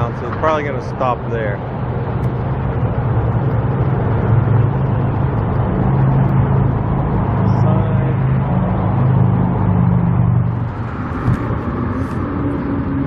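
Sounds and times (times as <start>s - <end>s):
car engine and road hum: 0.0s - 13.0s.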